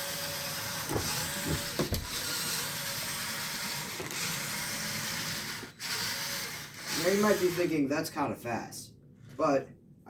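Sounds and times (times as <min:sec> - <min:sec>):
toy car motors whirring: 0:00.0 - 0:07.8
knocks: 0:00.9 - 0:02.2.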